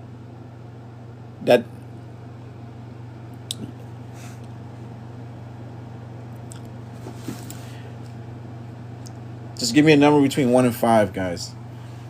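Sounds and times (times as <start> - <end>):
steady low hum: 0.0 - 12.0
soft rustles: 6.9 - 7.7.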